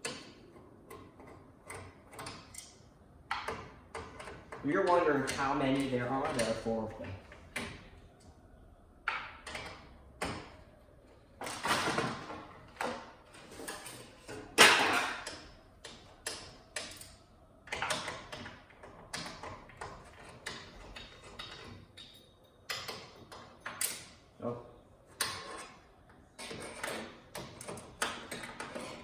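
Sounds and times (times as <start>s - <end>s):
metal parts and tools clicking: 11.4s - 24.3s, 25.2s - 29.0s.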